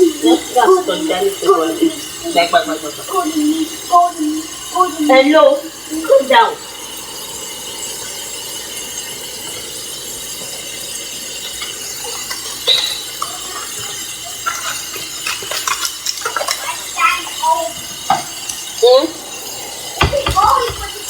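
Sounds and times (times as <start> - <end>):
steady hiss: 0.0 - 21.0
cutlery clinking on dishes: 11.5 - 16.6.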